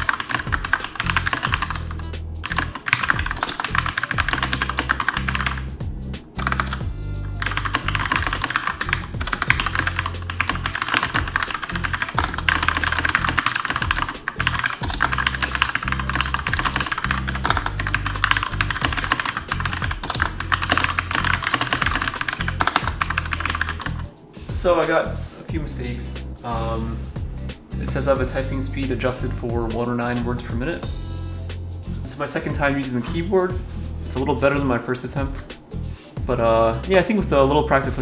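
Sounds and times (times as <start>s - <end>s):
mechanical keyboard typing: 0.0s - 5.7s, 6.4s - 24.1s
background music: 0.0s - 38.0s.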